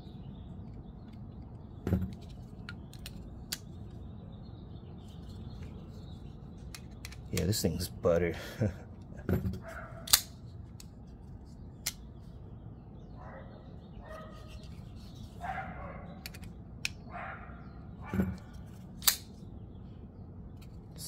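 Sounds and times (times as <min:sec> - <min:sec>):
dog barking: 0:13.2 - 0:14.4, 0:15.4 - 0:16.2, 0:17.1 - 0:18.4.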